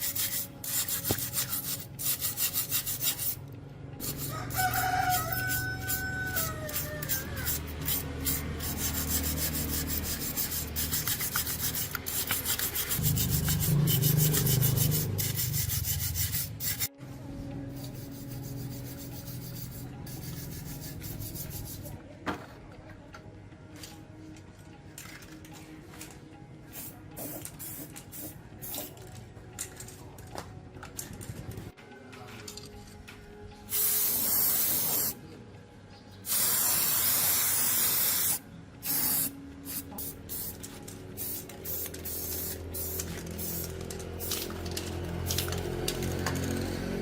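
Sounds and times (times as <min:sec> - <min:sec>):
rapid abrasive rubbing: 0:05.3 - 0:16.9.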